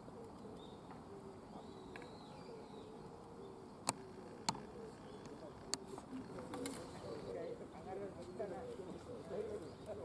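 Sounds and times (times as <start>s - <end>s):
faint high bird calls: 0.0s - 7.4s.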